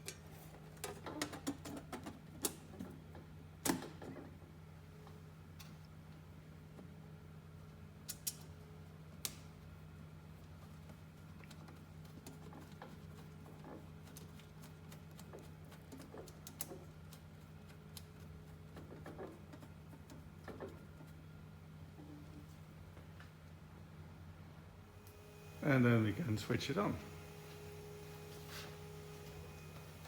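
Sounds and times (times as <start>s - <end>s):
steady low hum: 19.4s - 30.0s.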